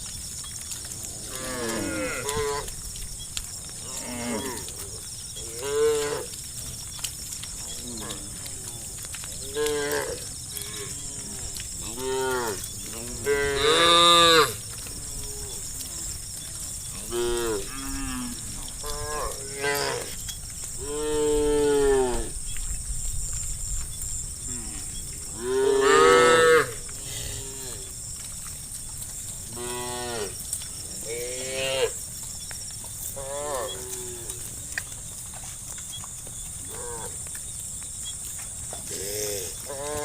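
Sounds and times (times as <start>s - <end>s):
cows mooing: 1.1s - 2.7s, 3.7s - 6.4s, 7.7s - 16.2s, 16.8s - 20.2s, 20.8s - 22.4s, 24.4s - 27.9s, 29.5s - 32.0s, 33.2s - 34.5s.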